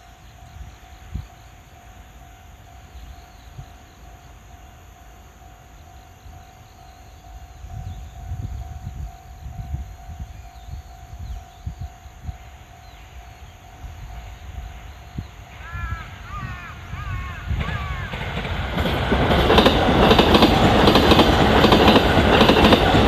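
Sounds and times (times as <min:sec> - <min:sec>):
level-crossing warning bell: 0:00.0 - 0:14.9.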